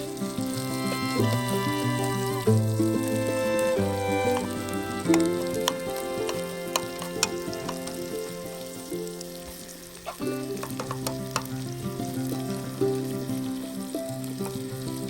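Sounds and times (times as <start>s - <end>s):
background music of held notes: 0.0s - 15.0s
food sizzling in a pan: 0.0s - 15.0s.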